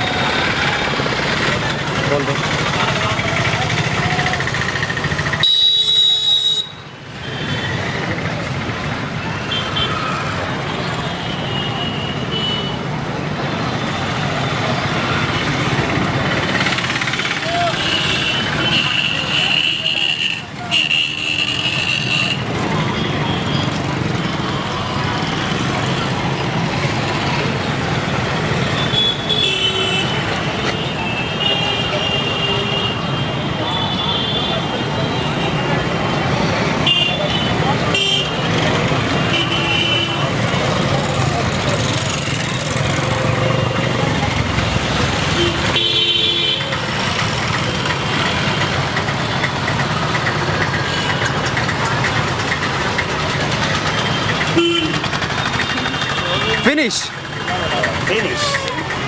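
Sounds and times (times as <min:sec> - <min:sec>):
road traffic noise: 0:00.0 - 0:59.0
vehicle horn: 0:45.3 - 0:46.7, 0:54.5 - 0:55.2.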